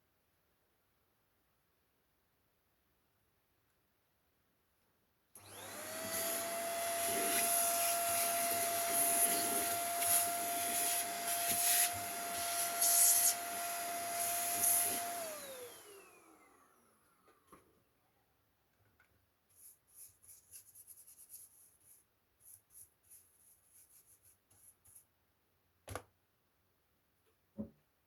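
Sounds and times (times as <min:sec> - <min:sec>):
small vacuum motor whine: 0:05.4 - 0:17.2.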